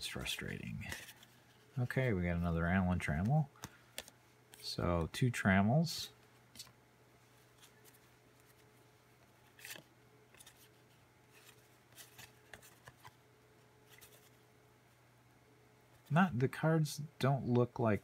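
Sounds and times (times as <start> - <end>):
cardboard cards rustling: 0.0 - 4.8, 6.3 - 13.2, 13.8 - 14.5
faint low hum: 0.0 - 18.0.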